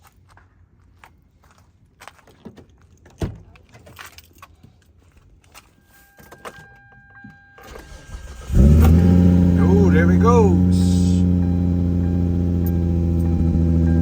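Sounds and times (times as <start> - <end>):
steady high tone: 9.5 - 14.0.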